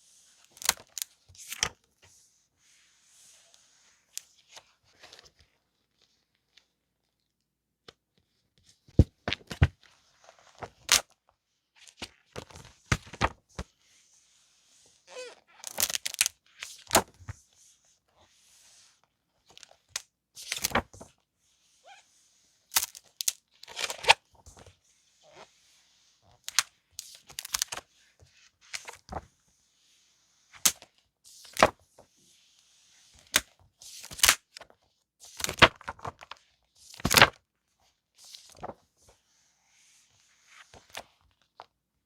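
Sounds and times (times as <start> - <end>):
paper rustling and crinkling: 20.4 - 21.1, 35.4 - 37.3, 38.3 - 38.8.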